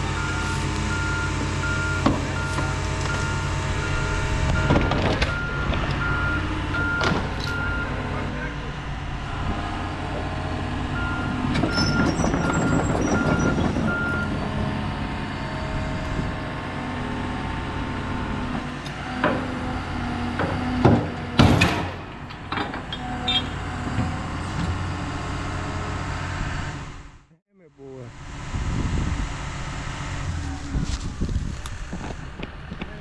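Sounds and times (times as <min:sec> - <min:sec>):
backup alarm beeping: 0:00.0 - 0:08.0
diesel heavy equipment running: 0:00.0 - 0:33.0.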